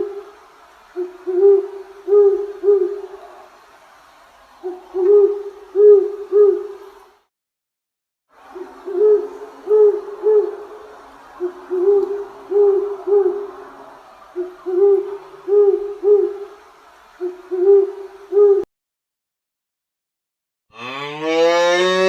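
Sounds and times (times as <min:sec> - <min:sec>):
owl hooting: 0:01.0 - 0:03.5, 0:04.6 - 0:06.9, 0:08.5 - 0:16.6, 0:17.2 - 0:18.7.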